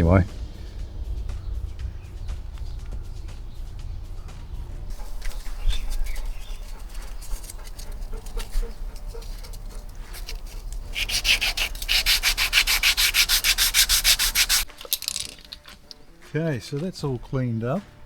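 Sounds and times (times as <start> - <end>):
sandpaper rubbing on car panel: 10.0 - 14.6.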